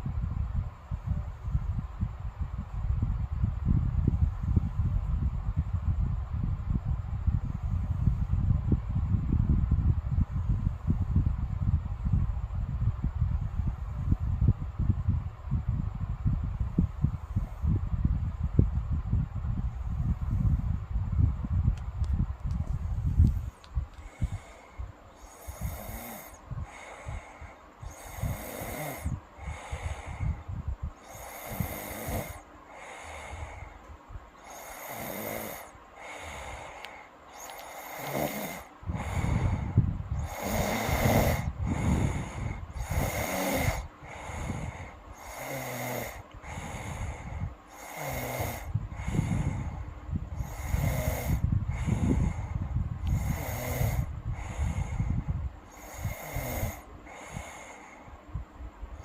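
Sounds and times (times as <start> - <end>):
girl snoring: 24.0 - 30.4, 31.0 - 33.7, 34.4 - 58.0.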